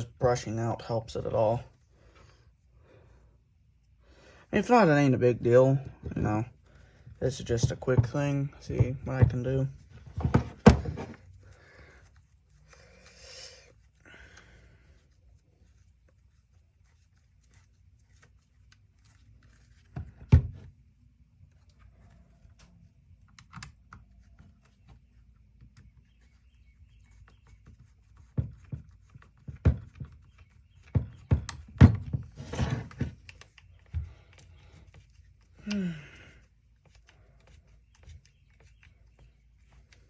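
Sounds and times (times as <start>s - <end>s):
tool parts knocking on workbench: 7.6s - 11.2s, 30.9s - 33.1s.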